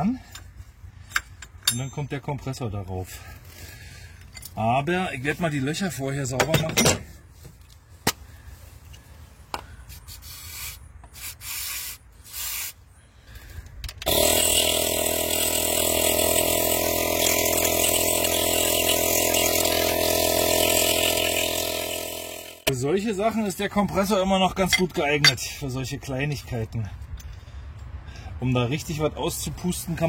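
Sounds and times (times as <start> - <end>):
air hissing bursts: 9.9 - 12.9
air compressor running: 14.1 - 22.7.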